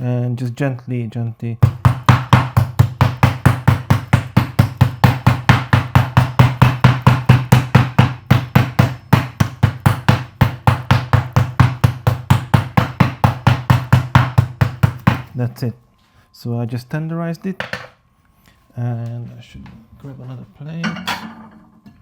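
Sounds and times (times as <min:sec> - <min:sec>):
meat tenderizer pounding meat: 0:01.6 - 0:15.3.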